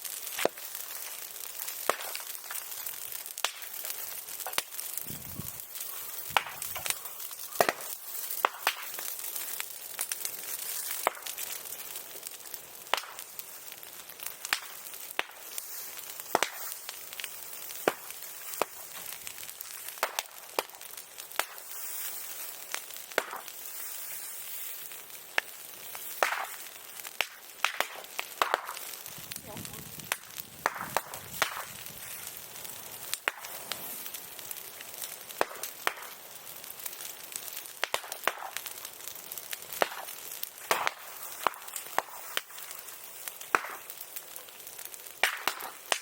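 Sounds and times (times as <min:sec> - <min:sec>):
bonfire crackling: 0:00.0 - 0:46.0.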